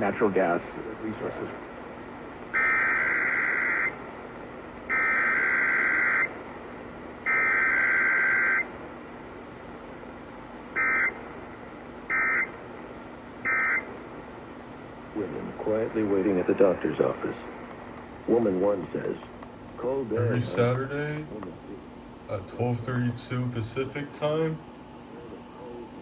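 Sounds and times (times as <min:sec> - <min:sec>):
radio hiss and static: 0:00.0 - 0:01.8, 0:15.1 - 0:26.0.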